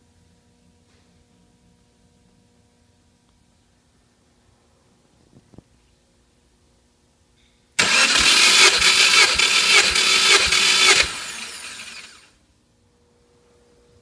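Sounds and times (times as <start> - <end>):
starter motor cranking engine: 7.8 - 12.3.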